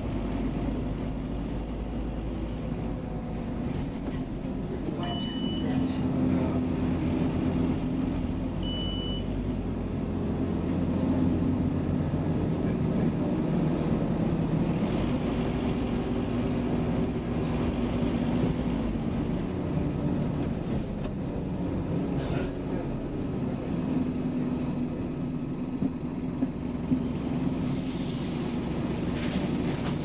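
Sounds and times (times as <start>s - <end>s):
bus engine running: 0.0s - 30.0s
short high beep: 5.1s - 5.7s, 8.6s - 9.3s.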